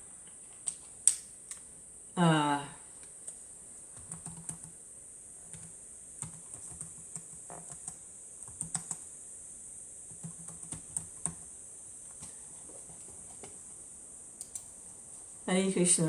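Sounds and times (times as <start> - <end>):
keyboard typing: 3.2 - 4.8, 5.5 - 9.1, 10.1 - 11.5, 14.4 - 14.8.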